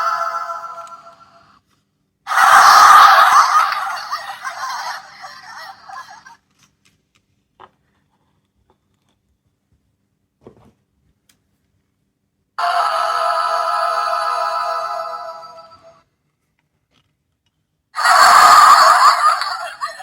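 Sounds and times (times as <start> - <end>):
toy playing sound effect: 0.0 - 1.4, 2.3 - 6.4, 12.6 - 15.9.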